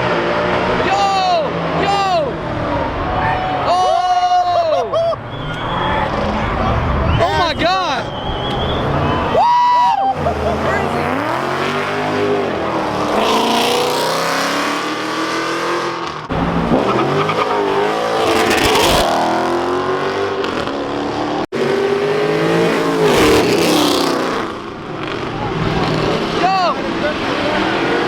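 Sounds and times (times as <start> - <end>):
car engines revving: 0.0 - 28.0.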